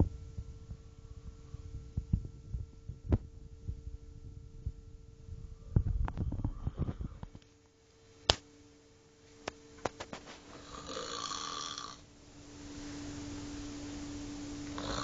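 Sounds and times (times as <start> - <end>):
faint steady hum: 0.0 - 15.0
person snoring: 10.6 - 12.0, 14.7 - 15.0.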